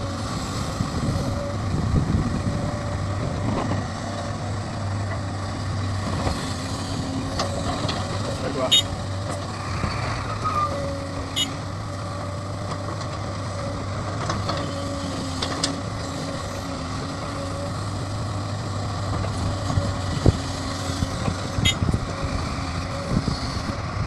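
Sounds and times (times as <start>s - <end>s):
diesel machinery engine hum: 0.0s - 24.0s
pitched machine tone: 11.3s - 11.6s.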